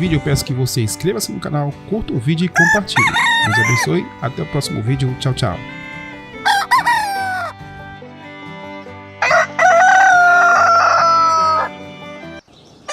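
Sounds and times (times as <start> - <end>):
rooster crowing: 2.6 - 3.9, 5.9 - 7.6, 9.2 - 11.8.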